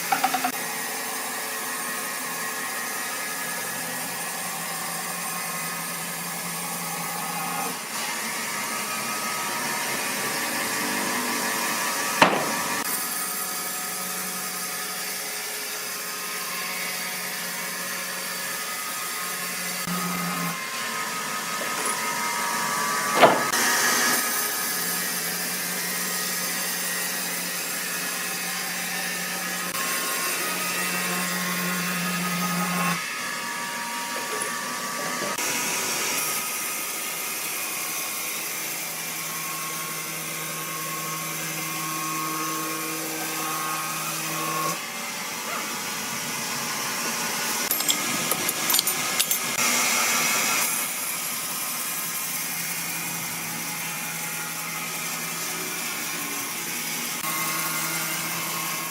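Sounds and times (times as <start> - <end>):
sawmill motor hum: 2.8 - 24.4
clatter of knocks: 12.2 - 12.8.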